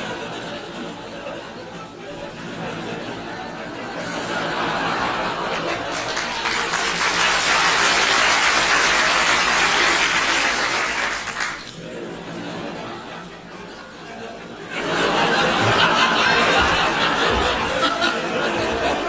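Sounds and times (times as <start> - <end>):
crowd laughing: 0.0 - 19.0
crowd clapping: 5.1 - 12.0.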